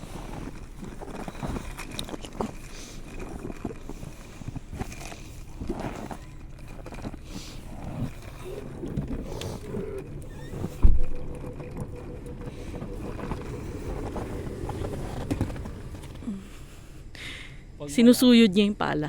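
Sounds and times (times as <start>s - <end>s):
wind buffeting microphone: 7.7s - 16.3s
heavy thump: 10.6s - 15.9s.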